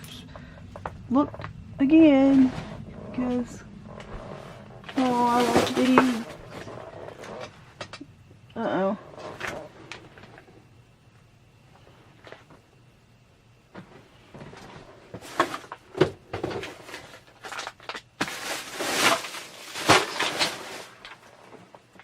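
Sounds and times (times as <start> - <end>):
rustling of packaging: 4.4 - 8.0, 15.1 - 22.0.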